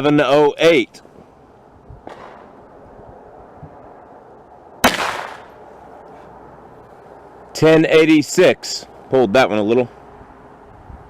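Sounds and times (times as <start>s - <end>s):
pistol shot with echo: 4.8s - 5.6s.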